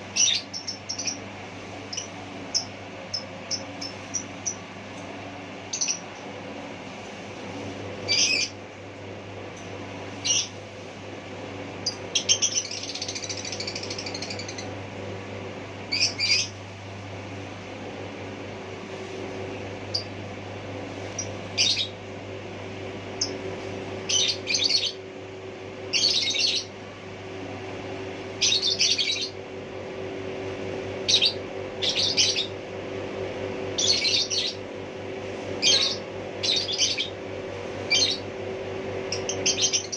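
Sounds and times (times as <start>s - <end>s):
bird chirping: 0.2s - 1.2s, 5.7s - 6.1s, 11.9s - 14.7s.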